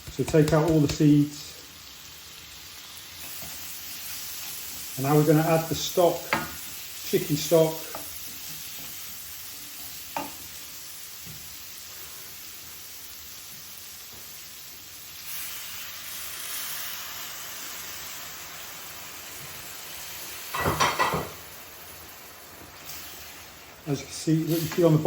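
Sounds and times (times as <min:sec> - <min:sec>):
curry sizzling in a pan: 0:00.0 - 0:25.0.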